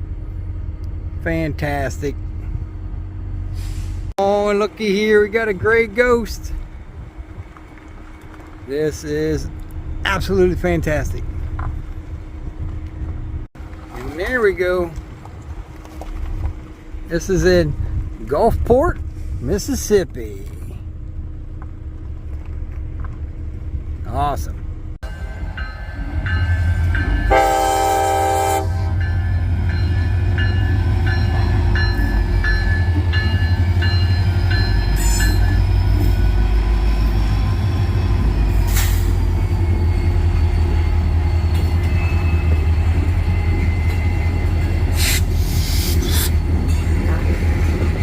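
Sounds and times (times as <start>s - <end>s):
train rumbling: 0.0s - 48.0s
locomotive horn blast: 26.8s - 29.1s
high wheel squeal: 29.8s - 47.4s.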